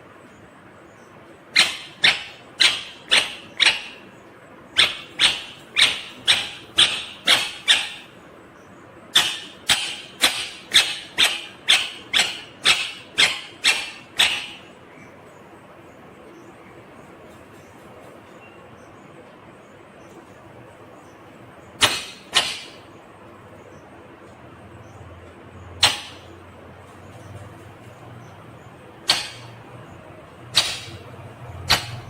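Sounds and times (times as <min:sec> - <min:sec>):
parakeet calling: 0:00.9 - 0:15.5, 0:25.7 - 0:32.0.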